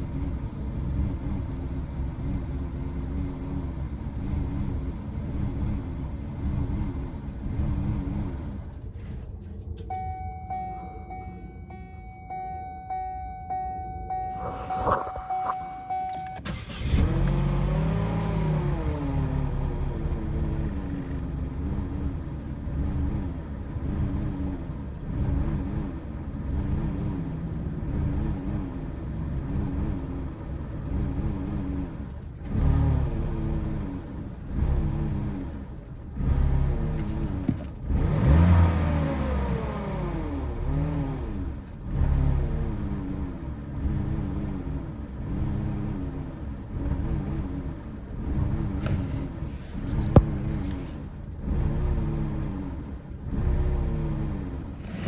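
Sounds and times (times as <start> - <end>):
car engine starting and idling roughly: 14.3 - 26.8, 47.7 - 52.1
car engine revving: 14.3 - 37.2, 37.8 - 55.0.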